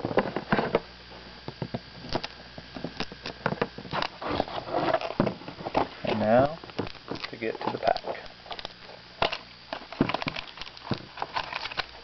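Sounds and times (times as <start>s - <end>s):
cardboard box crackles and rustles: 3.8s - 8.0s.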